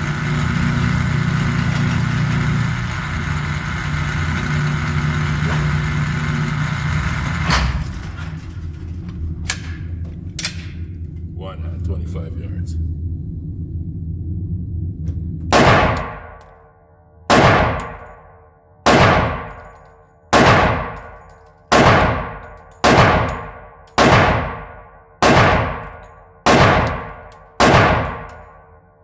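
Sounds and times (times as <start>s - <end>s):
pistol shots: 15.5s - 16.4s, 17.3s - 18.2s, 18.8s - 28.6s.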